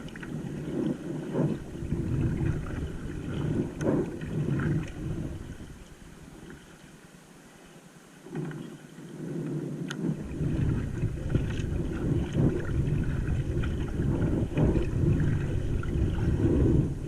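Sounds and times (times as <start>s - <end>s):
wind rumbling on microphone: 0.0s - 7.1s, 8.2s - 17.0s
faint clicks: 8.3s - 10.1s.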